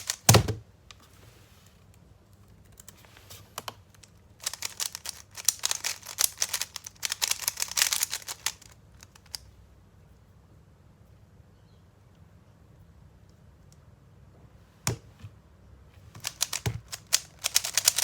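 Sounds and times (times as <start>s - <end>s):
puzzle cube clicking: 3.6s - 9.4s, 16.2s - 18.0s.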